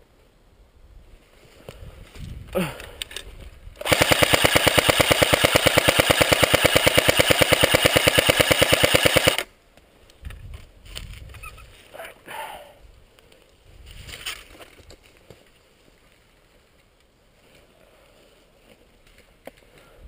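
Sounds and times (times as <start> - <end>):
airsoft gun firing full-auto: 3.8 - 9.5.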